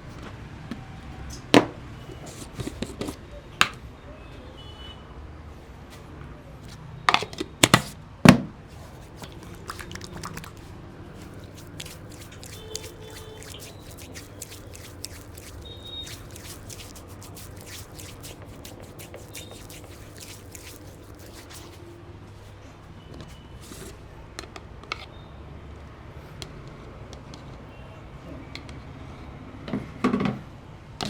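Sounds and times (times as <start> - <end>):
fingers rubbing scalp and hair: 9.0 - 10.6, 11.2 - 21.9
hands smacking head: 9.3 - 10.6.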